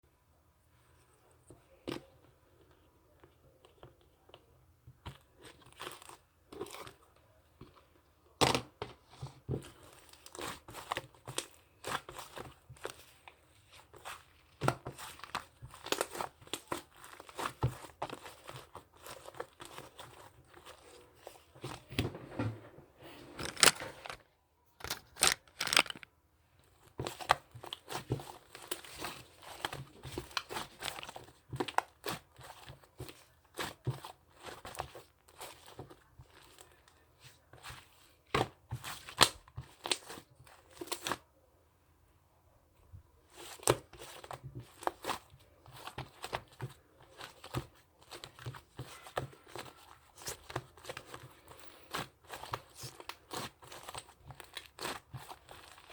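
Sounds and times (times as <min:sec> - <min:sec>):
paper or plastic crinkling: 0:14.8 - 0:26.1.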